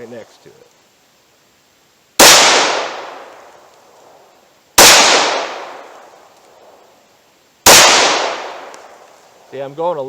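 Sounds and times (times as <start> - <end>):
pistol shots echoing: 2.2 - 3.5, 4.8 - 6.1, 7.6 - 9.0.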